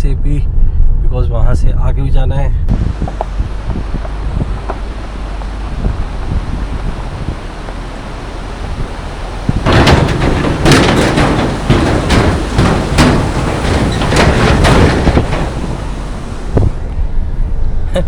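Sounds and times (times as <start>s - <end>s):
road and wind noise: 2.6s - 18.0s
tyres clattering over bridge deck: 2.7s - 17.0s.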